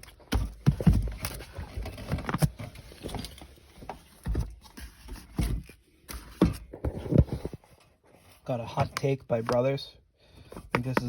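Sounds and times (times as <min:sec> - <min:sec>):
cardboard handling noise: 0:00.0 - 0:09.8
cardboard boxes thudding down: 0:00.2 - 0:03.2.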